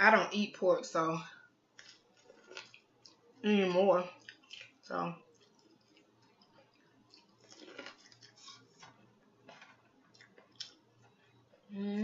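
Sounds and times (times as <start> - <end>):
person chewing fried corn: 1.7 - 3.4, 4.1 - 11.7.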